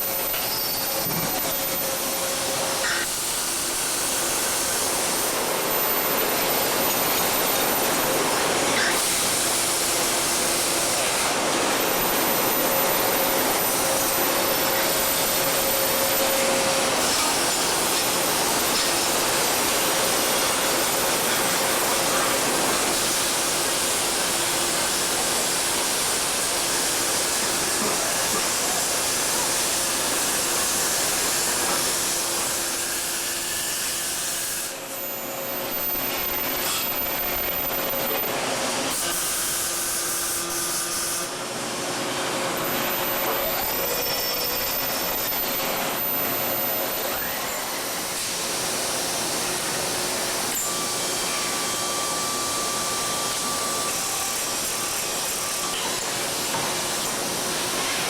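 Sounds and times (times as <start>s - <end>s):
welding arc hissing and crackling: 0.0s - 41.6s, 42.2s - 58.0s.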